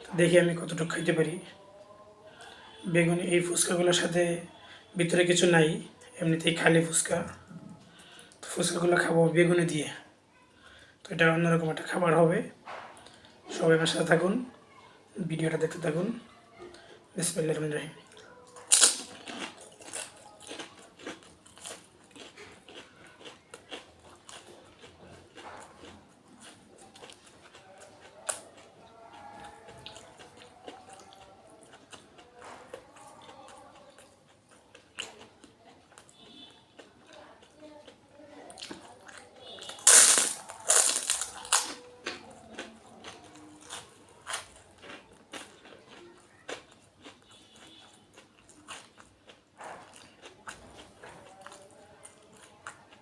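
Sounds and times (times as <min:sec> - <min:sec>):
crunchy snack bitten and chewed: 0:18.1 - 0:53.0.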